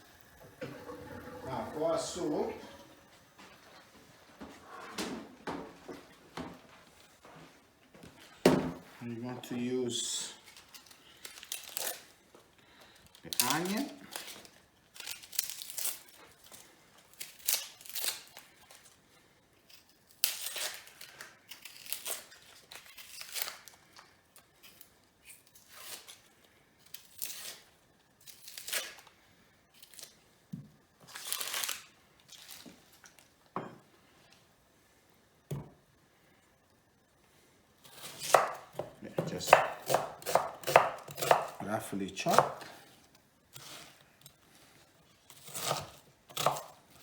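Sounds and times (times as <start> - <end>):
onion skin peeled and torn: 10.4 - 12.2, 13.0 - 19.0, 19.6 - 30.3, 31.0 - 33.3.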